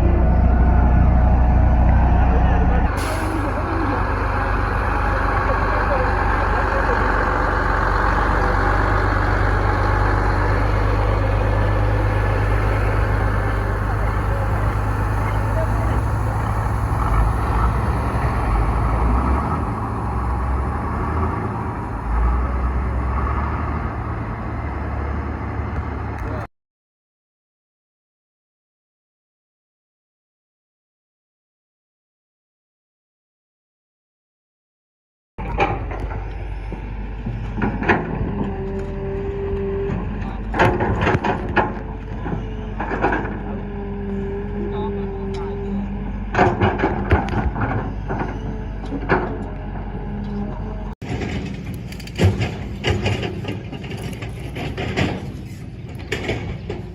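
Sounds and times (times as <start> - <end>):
construction machinery engine rumble: 0.0 - 26.5, 35.4 - 56.9
metal knocks and clanks: 39.8 - 43.5, 46.3 - 49.6, 51.0 - 56.9.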